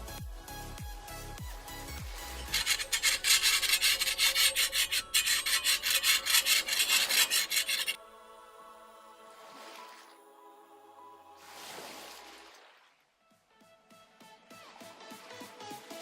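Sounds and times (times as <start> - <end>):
hand tool rasping on wood: 2.3 - 8.0.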